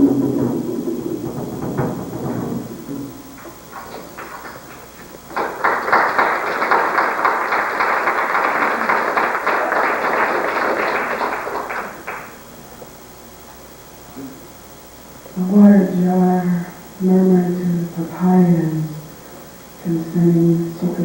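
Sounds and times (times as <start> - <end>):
fast percussion roll: 0.0 - 12.4.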